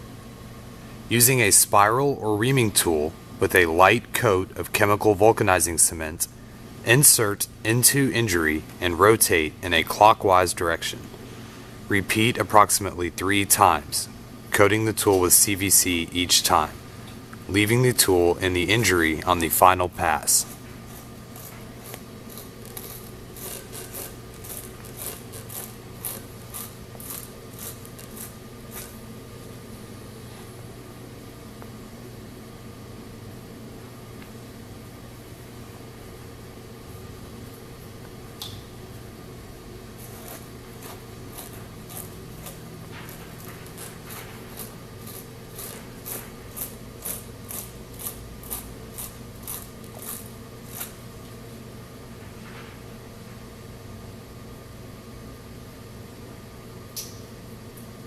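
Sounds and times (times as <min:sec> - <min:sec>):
steady low hum: 0:00.0 - 0:58.0
reaming tool rasping in tire: 0:20.1 - 0:29.0, 0:40.0 - 0:51.0.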